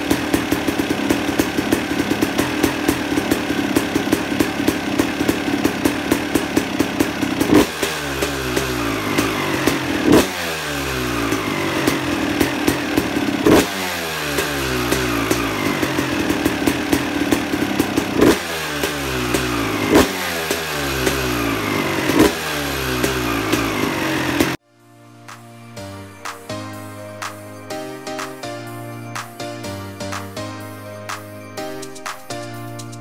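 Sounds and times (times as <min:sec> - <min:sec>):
dirt bike engine revving: 0:00.0 - 0:24.6.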